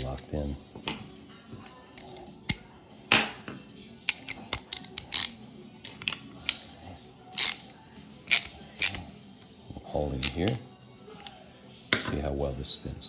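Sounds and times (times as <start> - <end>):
metal tool clicks and clinks: 4.1 - 6.6, 7.3 - 7.7, 8.3 - 9.0, 10.2 - 10.6.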